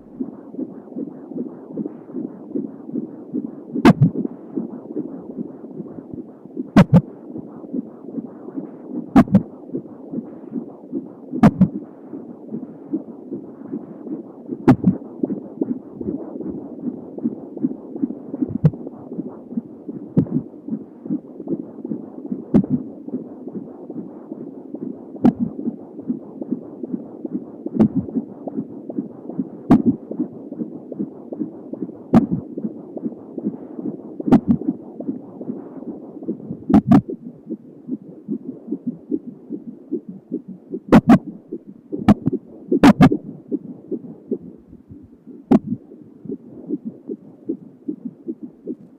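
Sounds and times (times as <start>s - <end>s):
fetal heartbeat on doppler: 0.0s - 48.9s.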